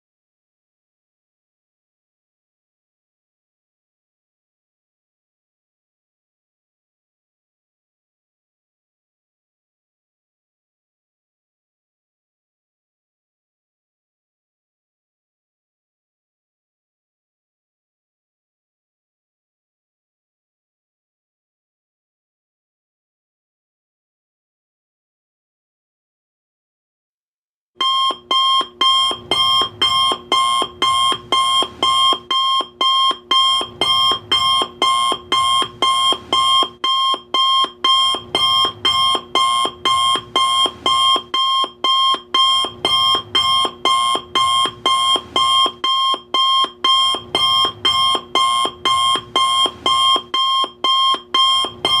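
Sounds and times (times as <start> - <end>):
alarm clock ringing: 27.8 - 52.0.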